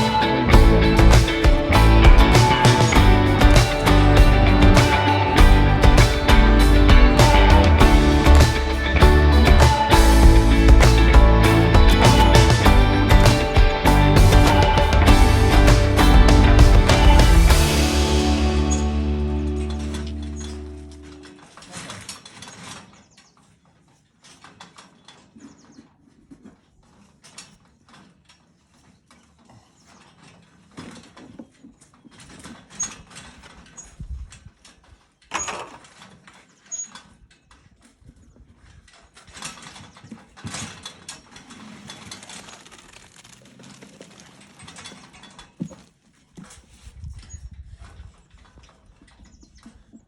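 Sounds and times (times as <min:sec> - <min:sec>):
background music: 0:00.0 - 0:21.2.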